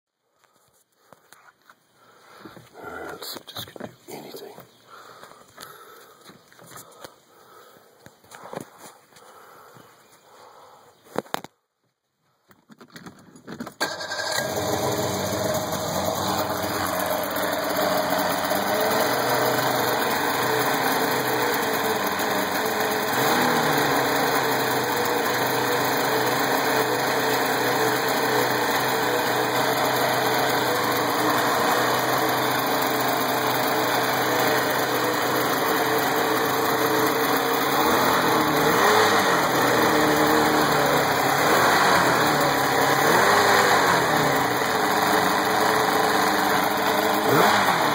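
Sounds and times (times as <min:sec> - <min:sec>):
outboard motor idling: 0:13.8 - 0:47.9.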